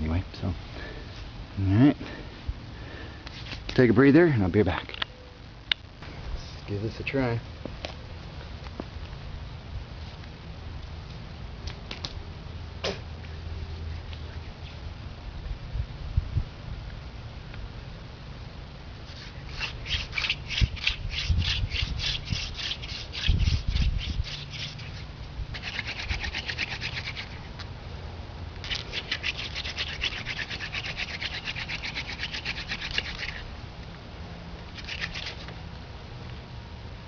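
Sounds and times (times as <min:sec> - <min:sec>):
wooden spindle rubbing in fireboard: 0:19.0 - 0:27.6, 0:28.7 - 0:33.5, 0:34.8 - 0:35.5.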